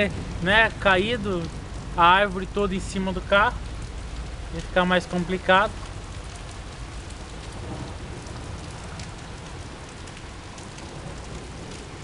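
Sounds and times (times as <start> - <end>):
rain drops ticking: 0.0 - 12.0
rain hiss: 0.0 - 12.0.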